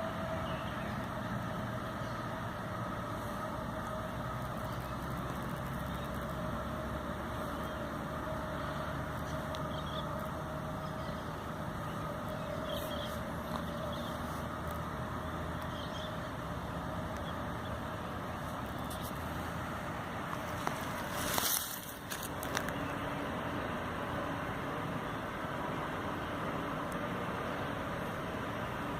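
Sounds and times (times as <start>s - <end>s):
low mechanical rumble: 0.0s - 28.9s.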